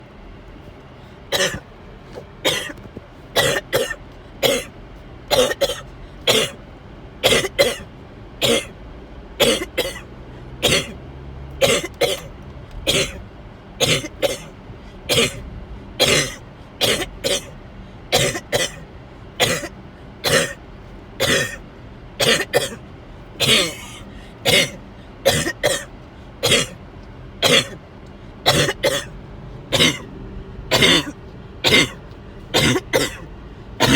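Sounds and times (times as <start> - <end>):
person coughing: 1.3 - 1.7, 2.4 - 2.8, 3.4 - 4.7, 5.3 - 6.6, 7.2 - 8.8, 9.4 - 11.0, 11.6 - 12.3, 12.9 - 13.2, 13.8 - 18.8, 19.4 - 20.6, 21.2 - 21.6, 22.2 - 22.8, 23.4 - 26.8, 27.4 - 27.8, 28.4 - 30.1, 30.7 - 33.9.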